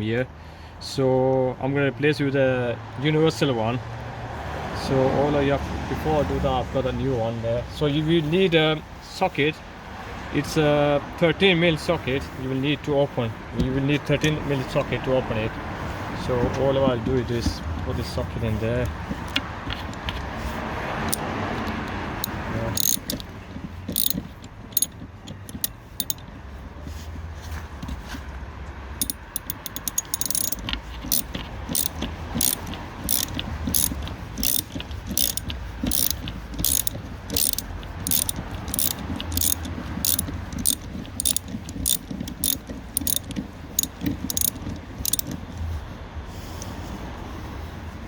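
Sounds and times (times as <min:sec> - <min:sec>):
ratchet wrench clicking: 0:21.0 - 0:26.2, 0:29.0 - 0:45.4.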